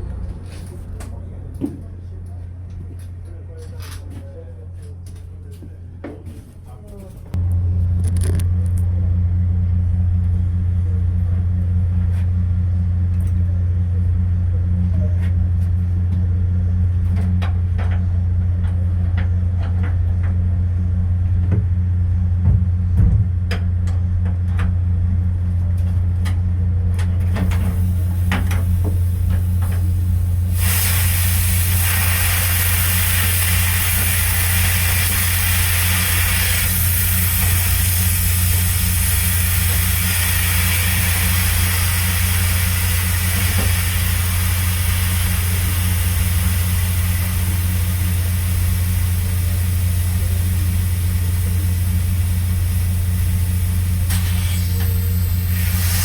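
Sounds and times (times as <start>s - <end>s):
low mechanical hum: 0.0s - 56.0s
loud steady hiss: 27.6s - 56.0s.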